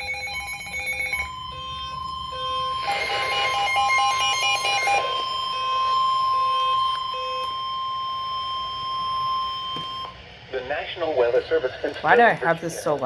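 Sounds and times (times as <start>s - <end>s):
steady high alert tone: 0.0s - 10.2s.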